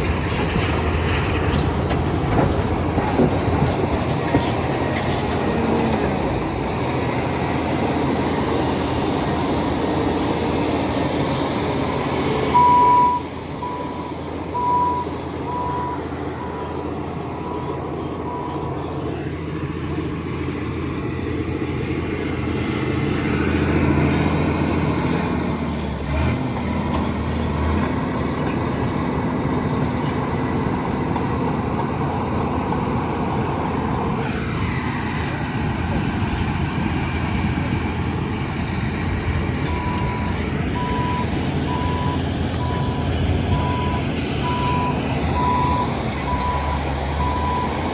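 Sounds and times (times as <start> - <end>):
heavy machinery diesel engines: 0.0 - 47.9
reversing alarm beeping: 12.5 - 16.8, 39.6 - 47.8.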